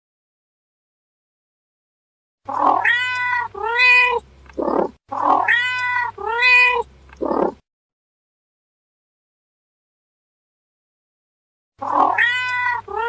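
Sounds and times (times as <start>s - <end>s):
cat meowing: 2.5s - 7.6s, 11.8s - 13.0s.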